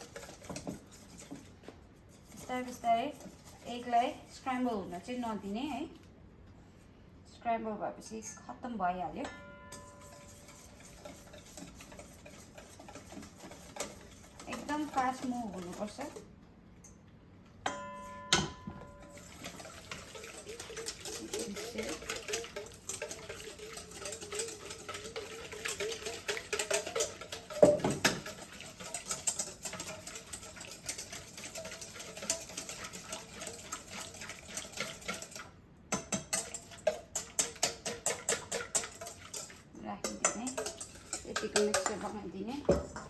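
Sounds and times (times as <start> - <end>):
utensil clinking on bowl: 9.2 - 17.0, 17.6 - 43.0.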